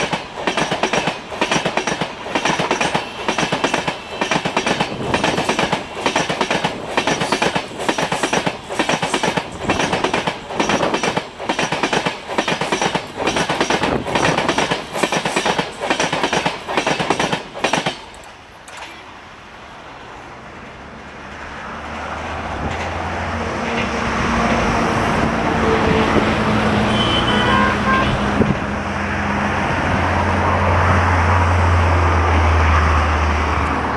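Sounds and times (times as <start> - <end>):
train wheels clickety-clack: 0.0 - 19.0, 21.9 - 26.6.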